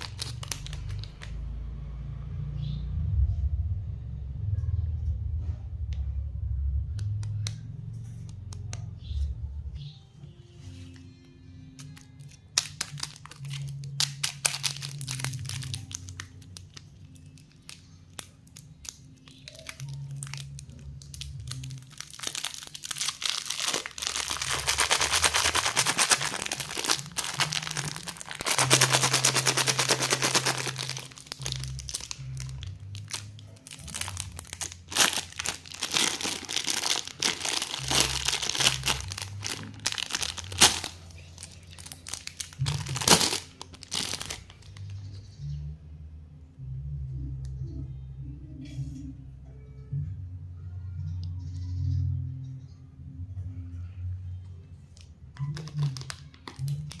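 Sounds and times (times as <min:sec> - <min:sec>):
plastic wrappers crinkling: 0:00.0 - 0:01.4, 0:11.8 - 0:45.2, 0:55.0 - 0:57.0.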